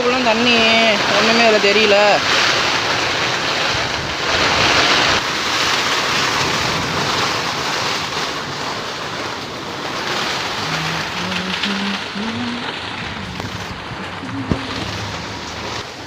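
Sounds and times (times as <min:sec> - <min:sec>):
heavy rain: 0:00.0 - 0:16.0
running water: 0:00.0 - 0:16.0.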